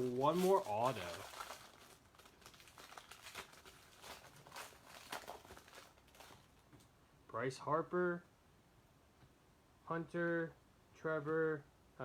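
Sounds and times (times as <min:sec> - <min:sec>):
cards and packaging crinkling: 0:00.0 - 0:06.9.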